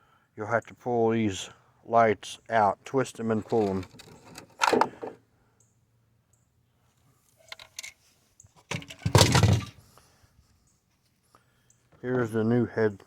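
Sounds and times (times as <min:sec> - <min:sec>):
plastic clatter: 0:03.4 - 0:05.2, 0:08.7 - 0:09.8.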